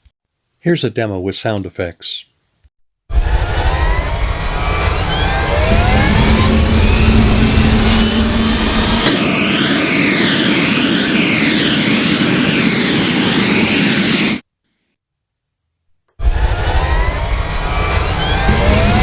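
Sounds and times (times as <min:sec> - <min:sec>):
jetpack engine roar and whine: 0:03.1 - 0:14.4, 0:16.2 - 0:19.0.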